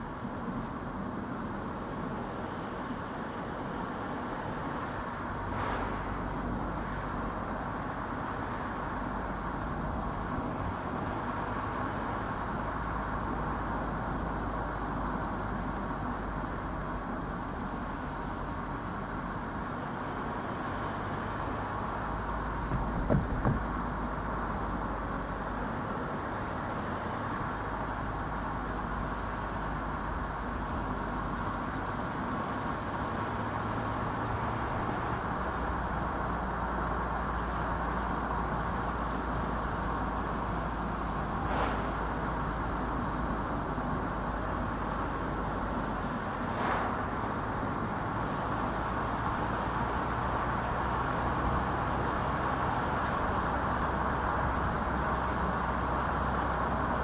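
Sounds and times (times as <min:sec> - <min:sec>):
car driving on road: 0:00.0 - 0:57.0.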